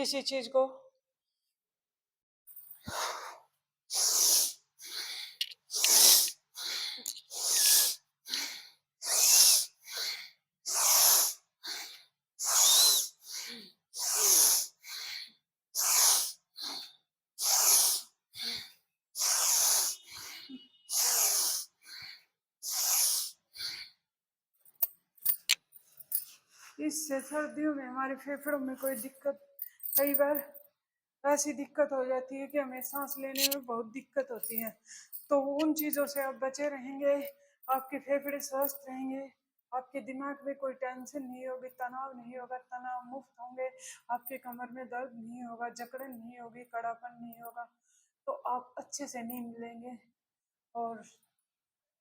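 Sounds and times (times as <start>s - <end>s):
woman breathing hard: 2.8s - 24.0s.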